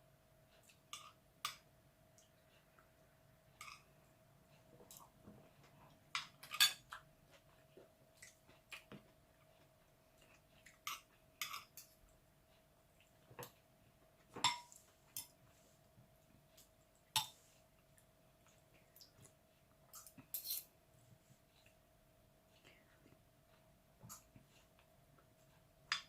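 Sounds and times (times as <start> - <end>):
faint steady hum: 0.0 - 26.0
cutlery clinking on dishes: 6.2 - 6.9, 10.8 - 12.0, 14.3 - 15.4, 20.0 - 20.7.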